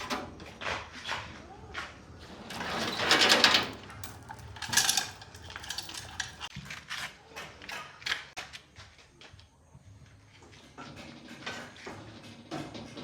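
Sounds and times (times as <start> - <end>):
metal tools clinking and scraping: 2.3 - 8.4.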